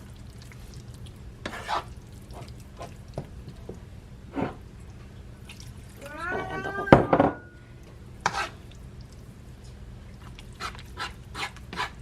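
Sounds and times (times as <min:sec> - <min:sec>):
spoon scraping in a pot: 0:01.4 - 0:01.9, 0:08.2 - 0:08.6.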